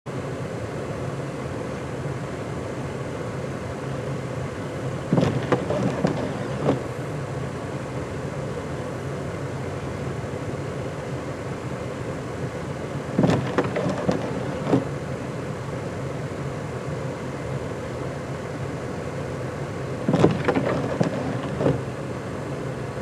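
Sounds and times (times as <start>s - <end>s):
engine running: 0.1s - 23.0s
sharp knocks: 5.1s - 6.8s, 13.2s - 14.9s, 20.1s - 21.8s.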